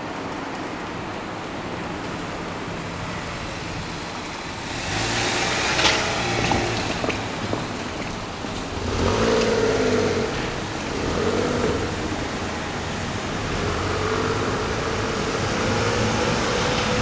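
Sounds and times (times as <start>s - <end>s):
steady traffic noise: 0.0s - 17.0s
vehicle passing close by: 4.6s - 7.5s, 8.5s - 17.0s.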